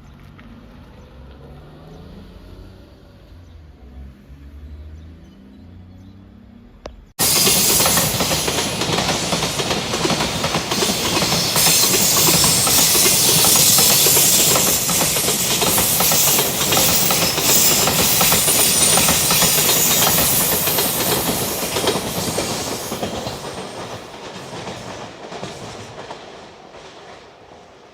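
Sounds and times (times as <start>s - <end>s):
train wheels clattering on rails: 7.2s - 27.9s.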